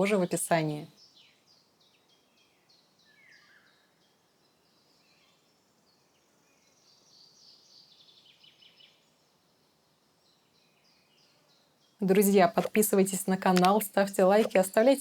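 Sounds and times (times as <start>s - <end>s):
faint bird chirping: 0.0s - 15.0s.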